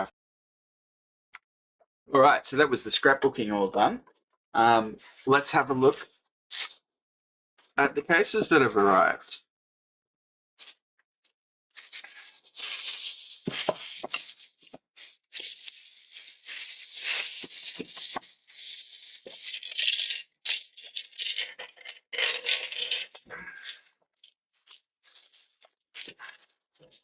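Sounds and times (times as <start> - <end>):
screws rattling in a box: 11.8 - 14.7, 15.3 - 26.1
packaging rustling: 11.8 - 27.0.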